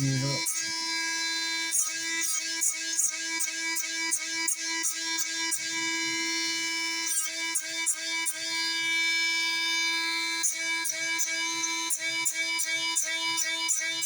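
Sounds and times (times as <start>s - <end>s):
sustained instrumental note: 0.0s - 0.4s.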